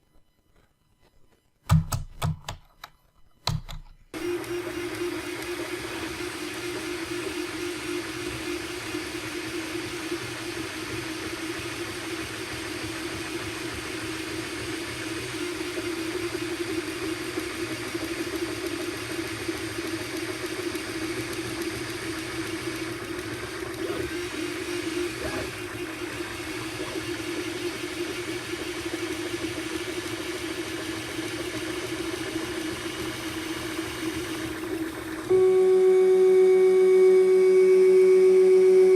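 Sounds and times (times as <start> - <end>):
stepper motors whirring: 4.6 - 35.4.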